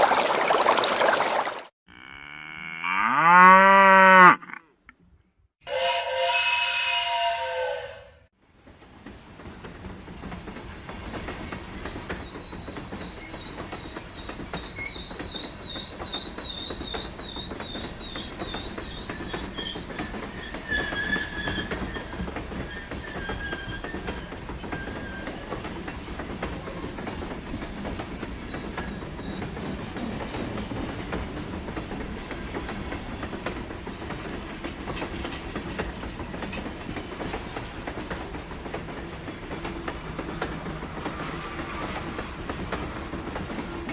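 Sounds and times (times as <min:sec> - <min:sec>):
train whistle: 0:05.6 - 0:08.3, 0:41.1 - 0:42.4
train wheels rumbling on rails: 0:06.6 - 0:43.9
faint wheel squeals: 0:10.7 - 0:31.9.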